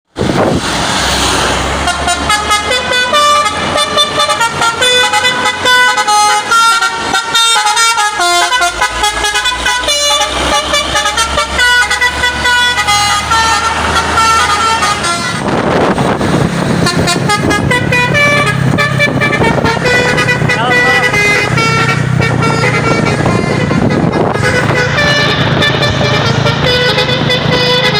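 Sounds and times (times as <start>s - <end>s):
multi-tone truck horn melody: 1.2s - 27.9s.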